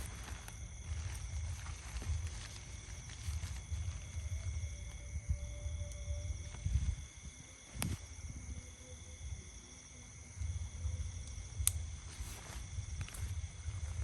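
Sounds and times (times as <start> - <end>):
wind gusting over microphone: 0.0 - 9.5
insect trills: 0.0 - 14.0.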